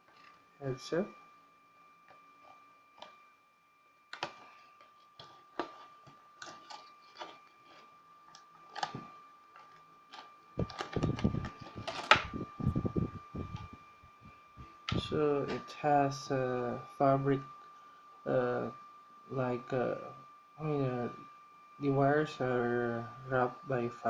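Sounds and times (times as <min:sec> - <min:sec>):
faint high whine: 0:00.0 - 0:24.0
close rustling and handling: 0:04.1 - 0:15.7.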